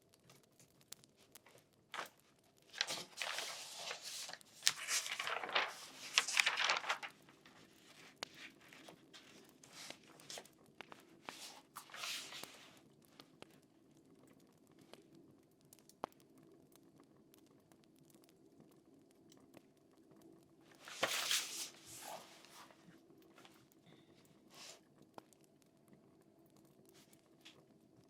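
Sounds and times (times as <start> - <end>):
paper rustling: 1.5 - 12.8, 20.8 - 22.8
light ticks: 13.0 - 20.3.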